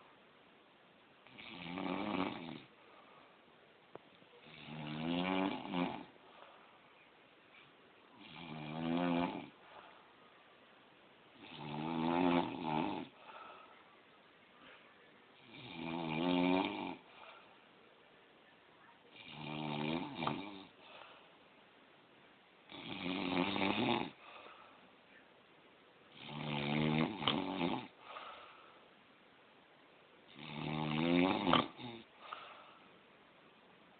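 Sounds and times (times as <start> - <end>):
man snoring: 1.3 - 2.7, 4.4 - 6.2, 8.2 - 9.6, 11.4 - 13.2, 15.4 - 17.1, 19.2 - 20.8, 22.7 - 24.2, 26.1 - 28.0, 30.3 - 32.1.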